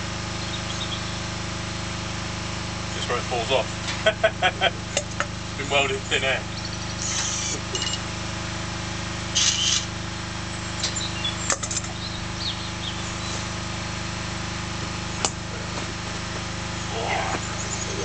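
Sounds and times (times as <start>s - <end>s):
machine hum: 0.0s - 18.0s
welding hissing and crackling: 13.0s - 18.0s.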